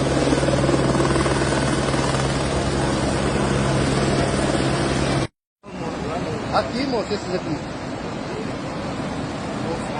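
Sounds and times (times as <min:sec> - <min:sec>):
helicopter rotor and engine drone: 0:00.0 - 0:05.3.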